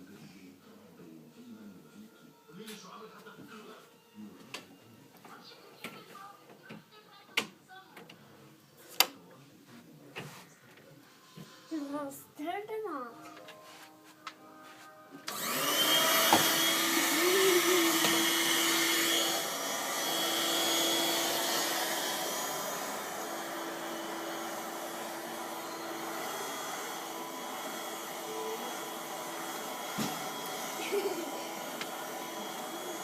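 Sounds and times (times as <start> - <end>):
vacuum cleaner running: 15.3 - 33.0.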